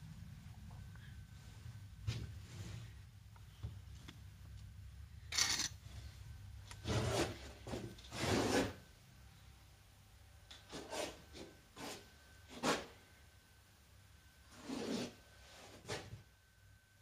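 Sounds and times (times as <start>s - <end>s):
rubbing or scraping strokes: 6.8s - 8.8s, 10.7s - 13.0s, 14.5s - 16.2s.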